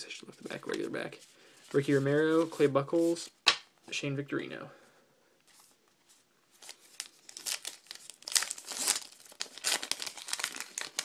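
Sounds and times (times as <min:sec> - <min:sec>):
wrapper crinkling and tearing: 0:06.6 - 0:11.0.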